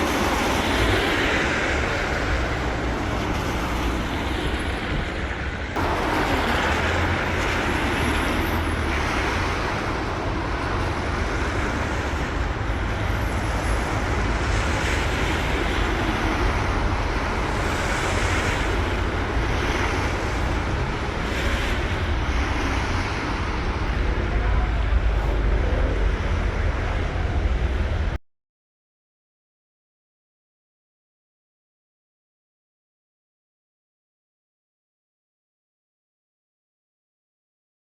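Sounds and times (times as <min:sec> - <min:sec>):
cars and buses passing: 0:00.0 - 0:28.2.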